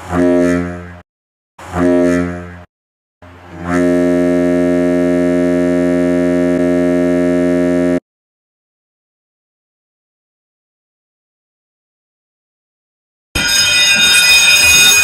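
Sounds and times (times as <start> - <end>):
ship's whistle blasts: 0.1 - 0.9, 1.7 - 2.5, 3.5 - 8.0, 13.4 - 15.0.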